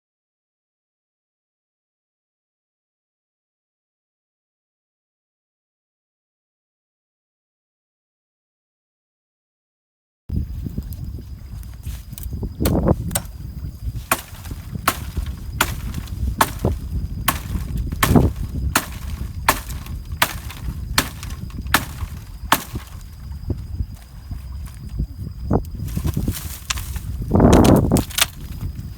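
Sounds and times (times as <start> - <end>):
sharp knocks: 14.1 - 23.0.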